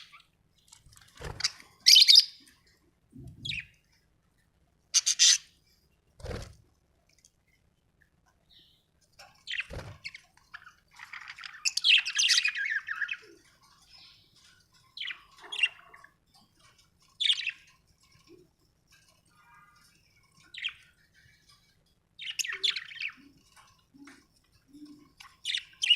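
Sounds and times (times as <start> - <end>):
budgerigars chirping: 5.0 - 5.5, 9.5 - 14.2, 17.2 - 17.7, 20.5 - 20.9, 22.2 - 23.3, 25.4 - 25.9.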